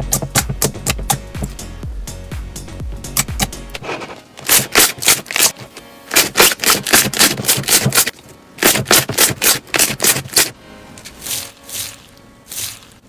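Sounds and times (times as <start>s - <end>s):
slime rasping rub sounds: 3.8s - 13.0s.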